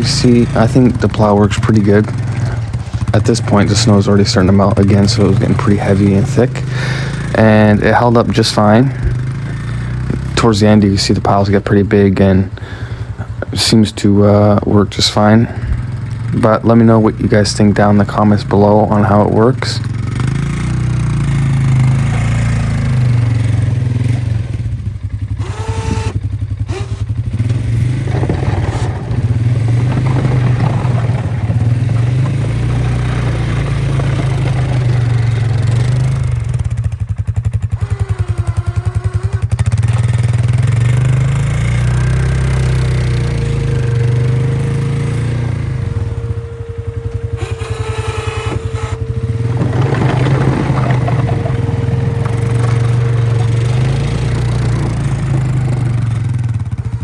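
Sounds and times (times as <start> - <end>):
atv engine revving: 0.0 - 57.0
plow pushing snow: 0.0 - 57.0
steady high whine: 43.2 - 52.6.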